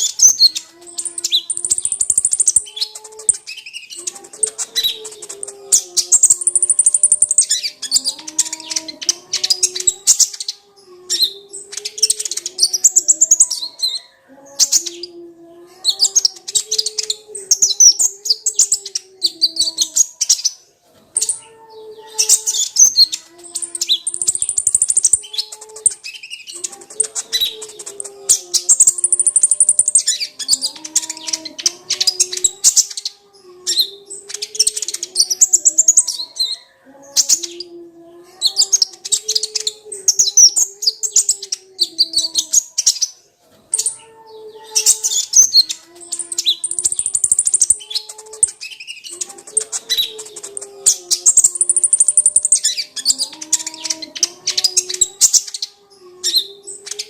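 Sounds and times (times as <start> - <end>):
bird twittering: 0.0 - 15.2, 22.0 - 37.8, 44.6 - 57.0.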